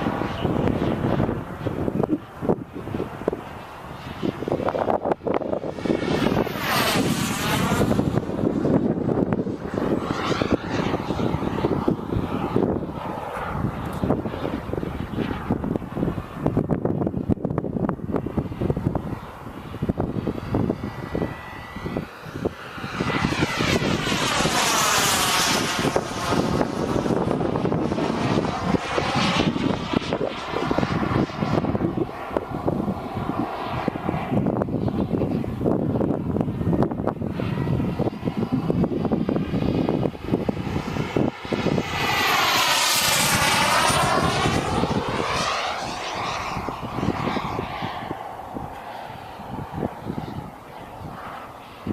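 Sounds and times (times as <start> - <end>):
jet turbine whine and hiss: 0.0 - 16.7, 17.9 - 51.9
wind buffeting microphone: 0.0 - 51.9.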